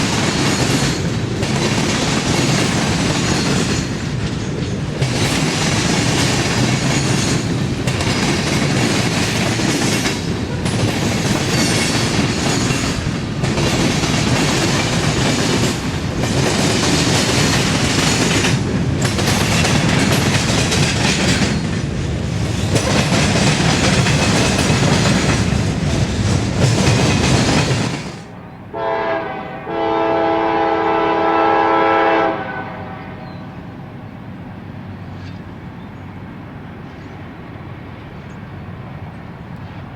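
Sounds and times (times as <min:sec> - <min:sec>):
train wheel clatter: 0:00.0 - 0:28.3
locomotive air horn: 0:28.7 - 0:33.6.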